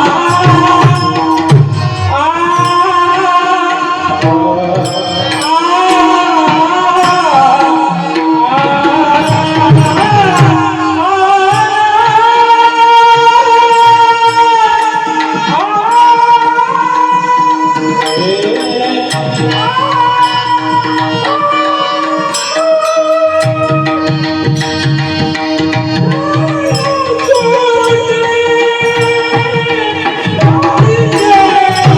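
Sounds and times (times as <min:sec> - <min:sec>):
tabla playing: 0:00.0 - 0:31.9
solo voice singing: 0:26.1 - 0:31.9.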